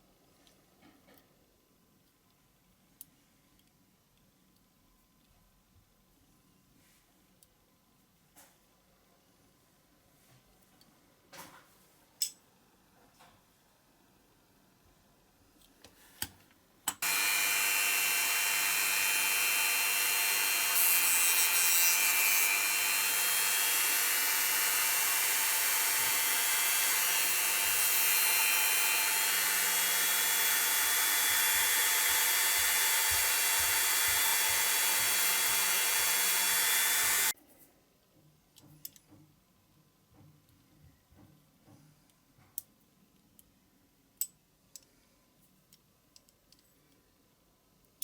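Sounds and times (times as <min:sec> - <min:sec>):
small electric power tool running: 0:17.0 - 0:37.4.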